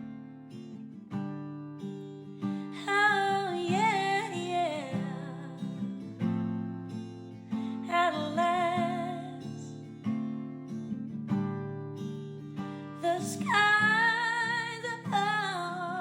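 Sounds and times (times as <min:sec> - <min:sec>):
acoustic guitar: 0:00.0 - 0:16.0.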